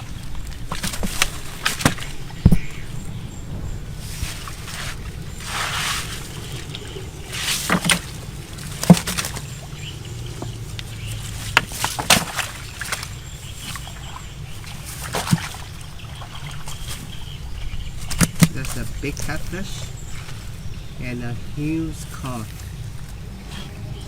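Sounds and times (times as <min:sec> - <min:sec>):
sharp water slaps: 0:00.0 - 0:02.8, 0:04.0 - 0:17.3, 0:18.0 - 0:20.4
steady low rumble: 0:00.0 - 0:24.0
water sloshing and splashing: 0:00.0 - 0:24.0.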